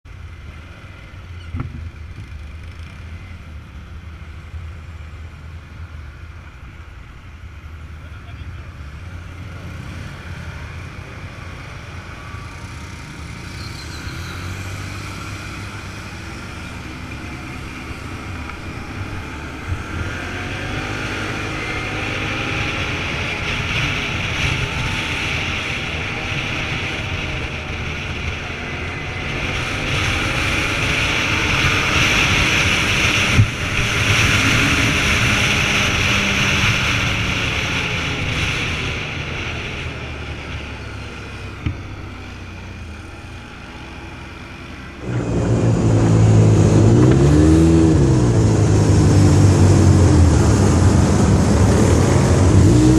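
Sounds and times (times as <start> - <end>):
road and wind noise: 0.0 - 52.9
vehicle engine running: 44.8 - 52.9.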